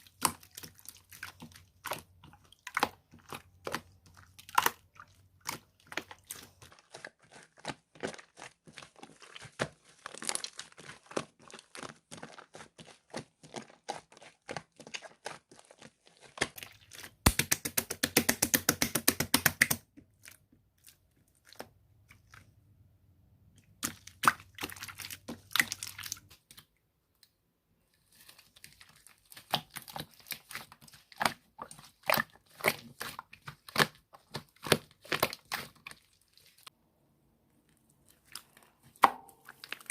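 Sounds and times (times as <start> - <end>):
slime clicking and popping: 16.4 - 19.8.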